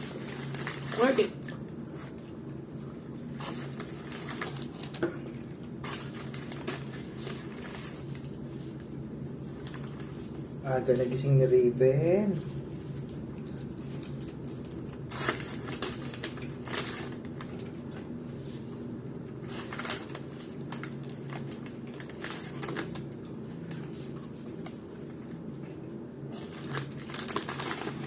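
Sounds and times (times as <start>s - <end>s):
food packaging crinkling: 0.0s - 2.3s, 3.2s - 11.2s, 12.9s - 18.2s, 19.3s - 25.5s, 26.3s - 28.0s
steady low hum: 0.0s - 28.0s.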